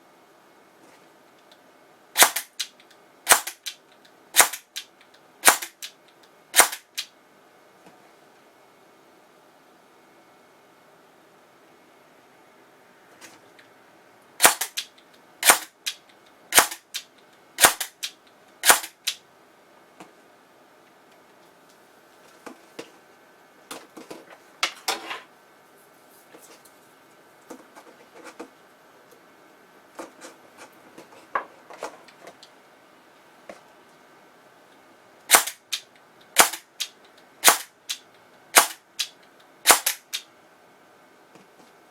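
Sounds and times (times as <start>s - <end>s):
airsoft gun shots: 2.2s - 2.6s, 3.3s - 3.7s, 4.4s - 4.7s, 5.4s - 5.9s, 6.6s - 7.0s, 14.4s - 14.8s, 15.4s - 15.8s, 16.5s - 16.9s, 17.6s - 19.2s, 35.3s - 35.7s, 36.4s - 36.7s, 37.4s - 38.0s, 38.6s - 38.8s, 39.6s - 40.2s.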